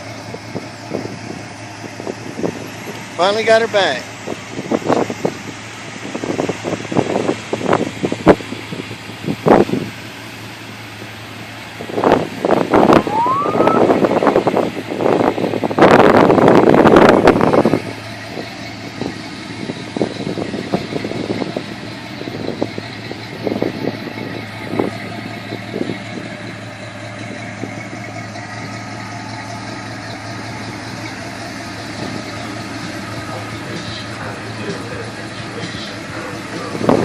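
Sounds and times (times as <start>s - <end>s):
vehicle engine running: 0.0s - 37.0s
loud rush of noise: 12.6s - 14.6s.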